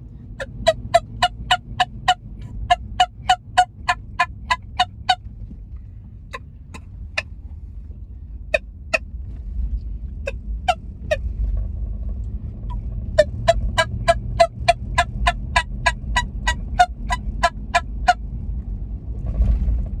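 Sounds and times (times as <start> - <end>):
low rumble: 0.0 - 20.0
turkey call blown in sharp notes: 0.4 - 5.2, 13.2 - 18.2.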